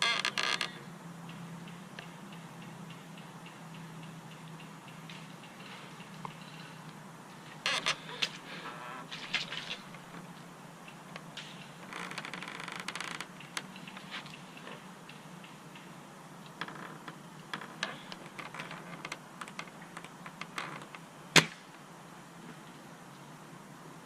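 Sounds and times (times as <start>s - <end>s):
sharp loud snap: 21.3s - 21.7s.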